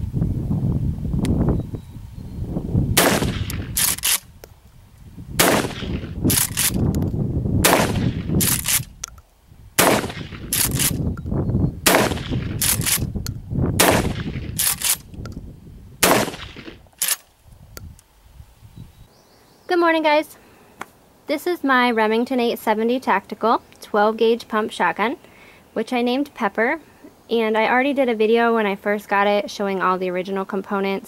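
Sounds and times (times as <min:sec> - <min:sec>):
shotgun shots: 0:03.0 - 0:04.3, 0:05.4 - 0:06.8, 0:07.6 - 0:08.9, 0:09.8 - 0:11.0, 0:11.8 - 0:13.1, 0:13.8 - 0:15.0, 0:16.0 - 0:17.2
shotgun pump racking clacks: 0:03.5 - 0:04.3, 0:06.3 - 0:07.0, 0:08.4 - 0:09.2, 0:10.5 - 0:11.0, 0:12.6 - 0:13.1, 0:14.6 - 0:15.3, 0:17.0 - 0:17.3.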